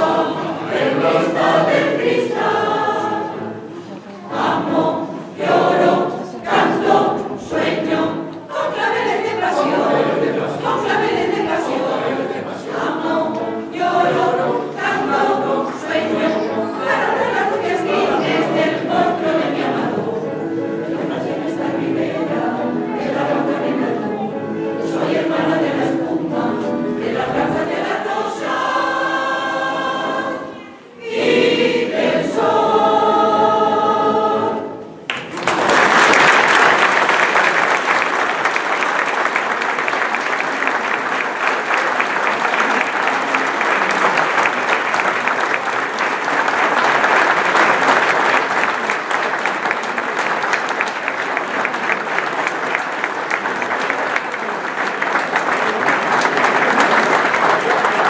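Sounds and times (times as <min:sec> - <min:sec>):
choir singing: 0:00.0 - 0:54.3
audience applause: 0:35.1 - 0:58.0.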